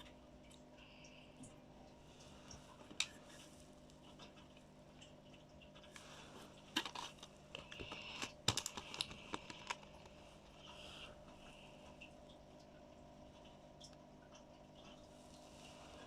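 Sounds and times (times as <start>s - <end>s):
packaging crinkling: 6.6s - 10.2s.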